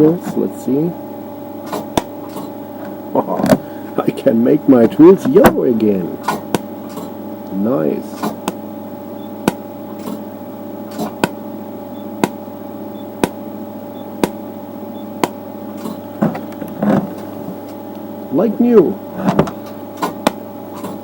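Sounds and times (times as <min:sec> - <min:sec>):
steady hum: 0:00.0 - 0:21.0
soft knocks and rustles: 0:16.2 - 0:17.8, 0:19.2 - 0:20.2.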